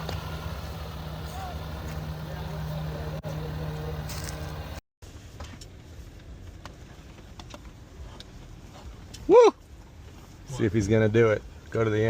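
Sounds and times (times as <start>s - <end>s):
car engine running: 0.0s - 4.8s.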